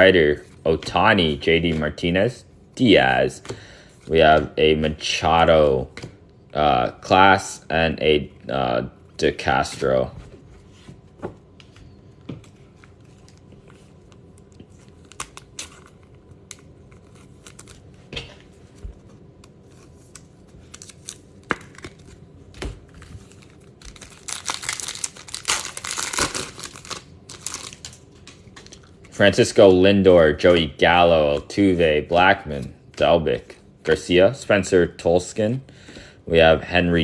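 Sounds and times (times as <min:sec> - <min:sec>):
card pack wrapper tearing: 0:14.8 - 0:17.9, 0:23.2 - 0:28.0.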